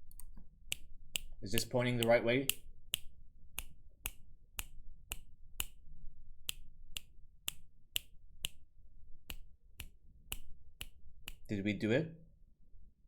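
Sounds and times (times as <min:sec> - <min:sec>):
sharp clicks: 0:00.0 - 0:05.8.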